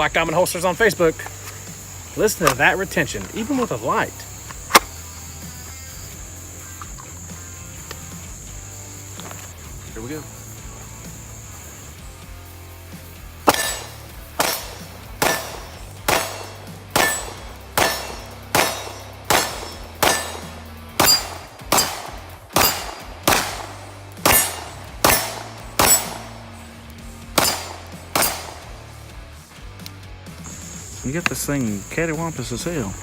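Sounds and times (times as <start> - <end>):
pistol shots: 1.0 - 5.2, 13.4 - 26.7, 27.3 - 28.9.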